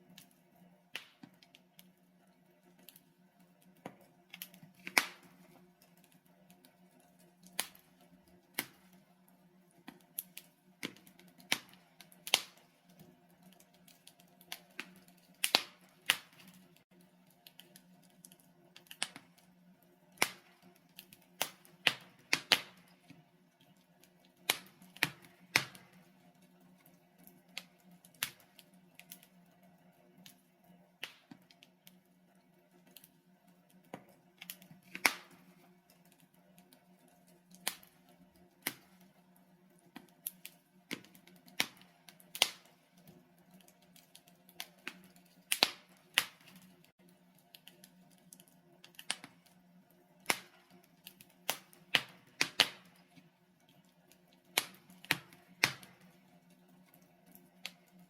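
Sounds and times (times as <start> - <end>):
logs crackling in fireplace: 0.0 - 58.0
sharp popping of fire: 0.9 - 1.5, 4.0 - 5.6, 7.4 - 9.0, 9.9 - 13.0, 13.6 - 16.7, 17.4 - 19.5, 20.1 - 23.1, 24.4 - 26.1, 27.5 - 29.3, 31.0 - 31.6, 34.4 - 35.6, 37.6 - 38.0, 40.2 - 42.8, 44.0 - 46.7, 48.8 - 49.5, 50.2 - 53.1, 54.5 - 56.1.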